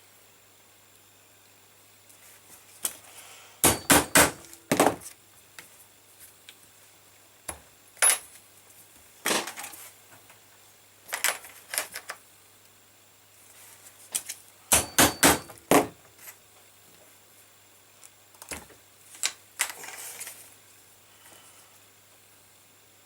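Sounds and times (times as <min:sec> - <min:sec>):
mallet striking metal punch: 0:03.6 - 0:04.5, 0:14.7 - 0:15.6.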